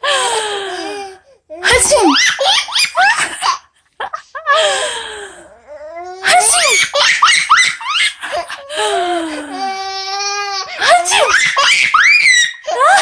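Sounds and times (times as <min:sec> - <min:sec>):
baby laughing: 0:01.6 - 0:03.6, 0:06.2 - 0:13.0
woman sneezing: 0:01.7 - 0:02.2.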